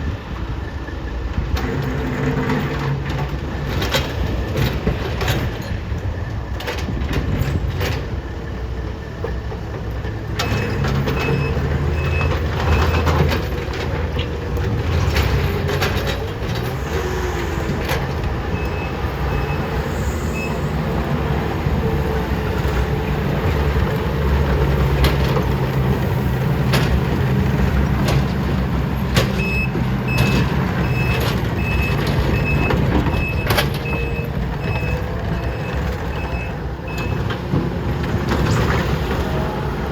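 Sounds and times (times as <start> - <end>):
diesel engines under load: 0.0 - 39.9
machines clanking on gravel: 1.5 - 21.0
reversing alarm beeping: 10.4 - 13.3, 17.1 - 21.8, 29.3 - 37.3.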